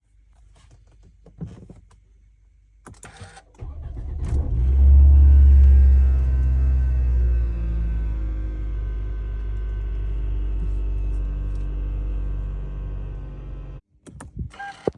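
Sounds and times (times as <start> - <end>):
car engine fast cold idle: 3.6 - 13.8
car engine starting: 3.6 - 13.8.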